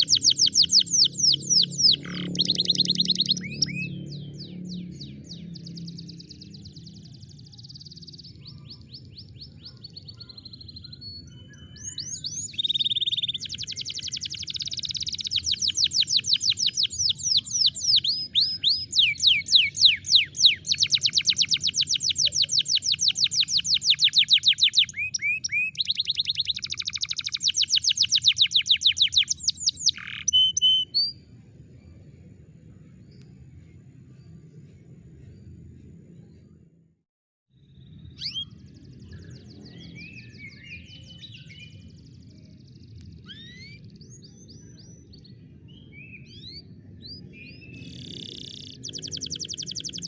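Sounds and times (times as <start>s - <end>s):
canary singing rapid trills: 0.0s - 8.8s, 12.4s - 31.1s, 37.8s - 38.6s, 47.7s - 50.0s
faint low hum: 31.1s - 36.9s.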